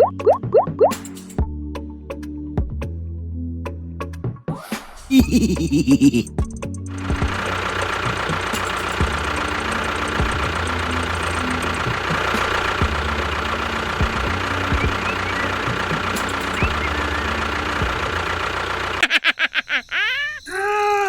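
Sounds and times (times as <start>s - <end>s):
small motor knocking and humming: 6.8s - 19.0s.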